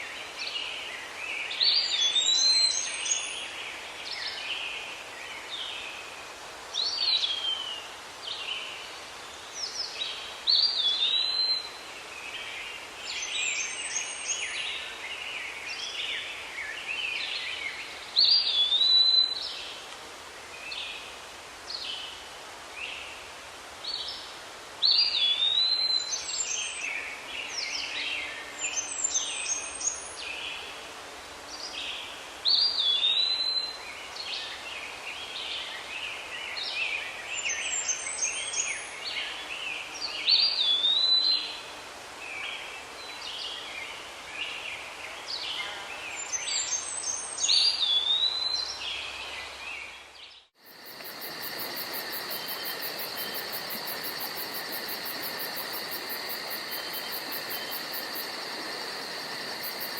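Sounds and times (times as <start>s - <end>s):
crickets trilling: 50.6s - 59.9s.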